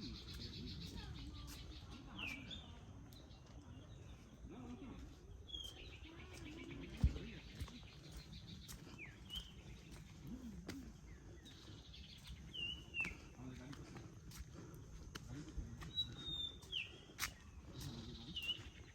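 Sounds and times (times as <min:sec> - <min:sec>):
faint outdoor background: 0:00.0 - 0:18.9
birds whistling: 0:06.7 - 0:10.1, 0:10.8 - 0:13.4, 0:15.9 - 0:18.9.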